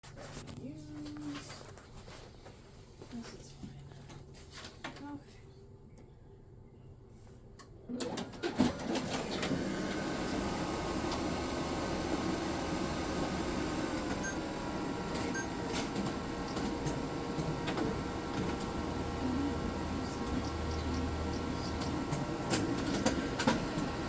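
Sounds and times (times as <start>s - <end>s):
printer motor whirring: 8.1s - 24.0s
printer clicks: 20.2s - 24.0s.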